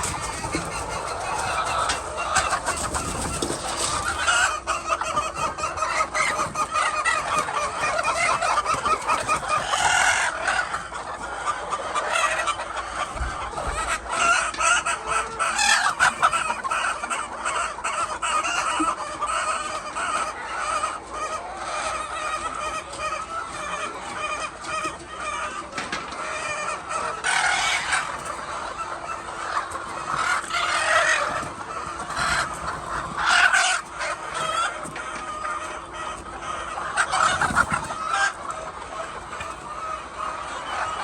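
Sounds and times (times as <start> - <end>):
chickens clucking: 0.0 - 41.0.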